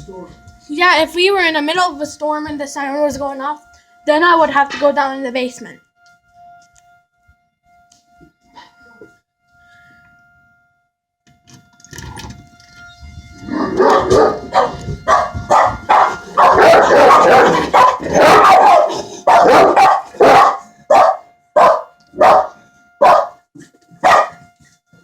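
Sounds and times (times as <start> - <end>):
faint tornado siren tone: 0.0 - 25.0
dog barking loudly: 13.7 - 23.4, 24.0 - 24.4.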